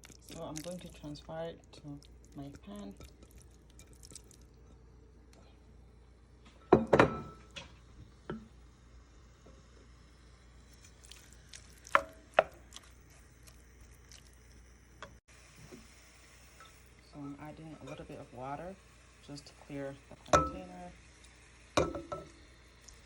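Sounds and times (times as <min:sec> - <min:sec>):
utensils knocking on bowl and pan: 0:20.3 - 0:20.7, 0:21.8 - 0:22.4.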